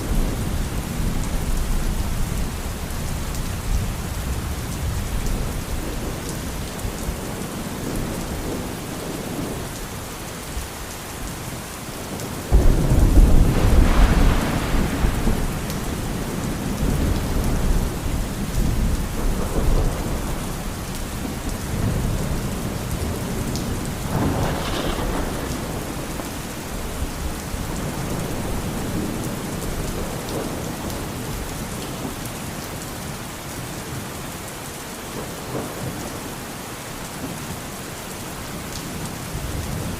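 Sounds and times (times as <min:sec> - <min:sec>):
steady rain: 0:00.0 - 0:39.9
thunder rumbling: 0:12.1 - 0:32.2.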